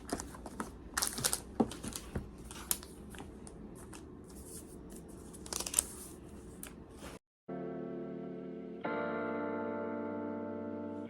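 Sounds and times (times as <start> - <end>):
cardboard packaging rustling: 0.0 - 7.2.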